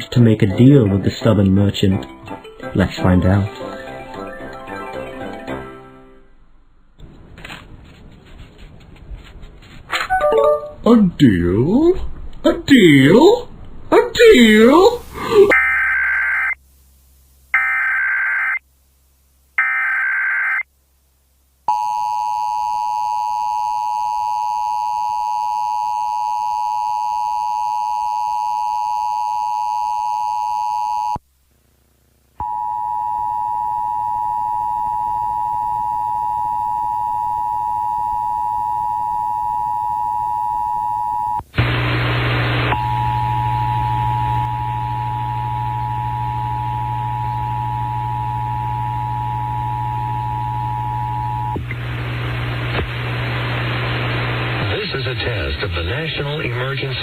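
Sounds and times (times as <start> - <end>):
steady attention tone: 32.4 - 41.4
low buzz: 32.4 - 54.6
burst of static: 41.5 - 57.0.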